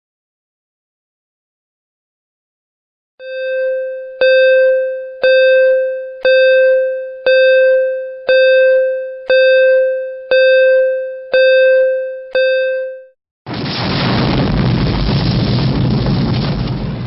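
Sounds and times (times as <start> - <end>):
bell-like ding: 3.2 - 13.2.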